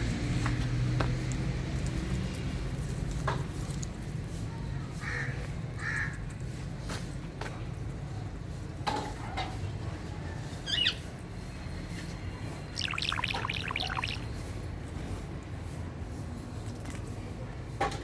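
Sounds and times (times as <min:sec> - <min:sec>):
parrot chirping and squawking: 0:10.7 - 0:11.0, 0:12.8 - 0:14.3.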